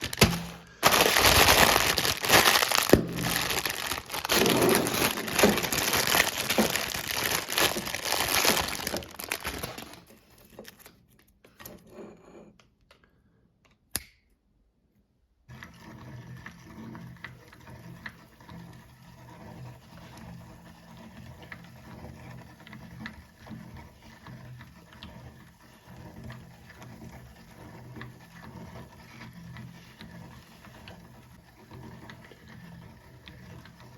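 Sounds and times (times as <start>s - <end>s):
meat grinder humming: 0.0s - 9.9s
loud crinkling and crackling: 0.0s - 10.9s.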